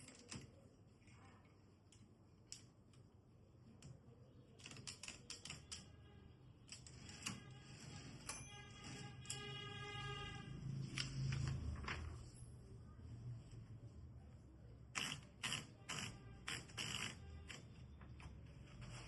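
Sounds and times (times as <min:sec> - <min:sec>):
typewriter keystrokes: 0:04.6 - 0:05.8.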